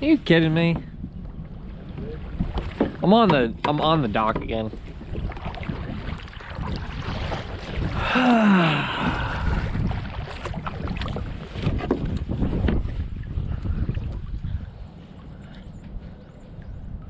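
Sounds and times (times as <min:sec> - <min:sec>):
wind buffeting microphone: 0:00.0 - 0:17.0
man groaning: 0:08.0 - 0:09.4.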